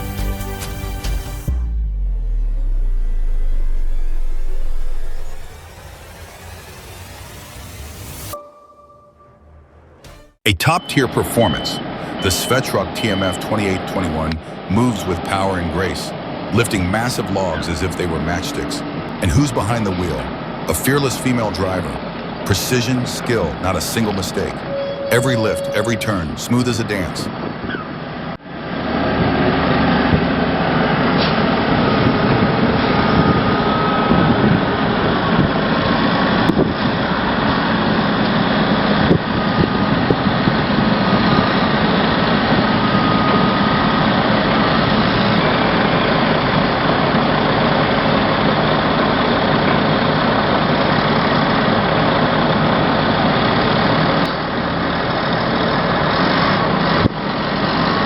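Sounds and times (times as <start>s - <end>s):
heavy machine engine running: 1.5s - 8.4s, 11.1s - 58.0s
faint whine: 1.7s - 27.5s.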